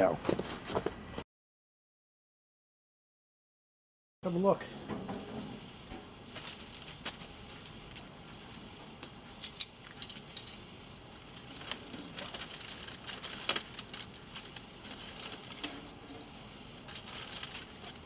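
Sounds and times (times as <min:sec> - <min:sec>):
aluminium foil crinkling: 0:06.3 - 0:08.6, 0:09.4 - 0:18.0.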